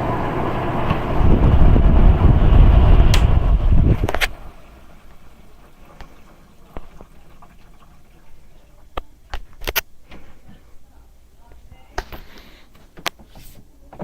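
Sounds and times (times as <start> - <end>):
window air conditioner running: 0.0 - 14.0
air conditioner switch click: 3.0 - 3.4.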